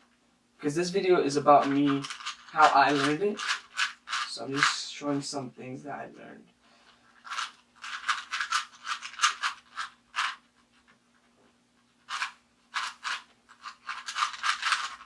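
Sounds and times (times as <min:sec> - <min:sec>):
puzzle cube twisting clicks: 0:01.7 - 0:04.7, 0:07.2 - 0:10.4, 0:12.1 - 0:15.0.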